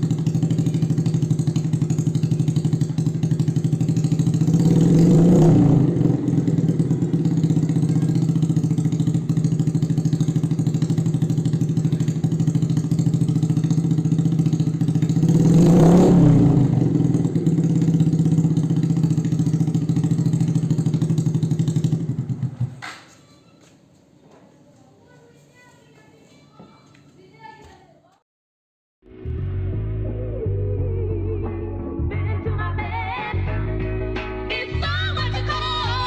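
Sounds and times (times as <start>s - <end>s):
motorcycle engine idling and revving: 0.0s - 23.6s.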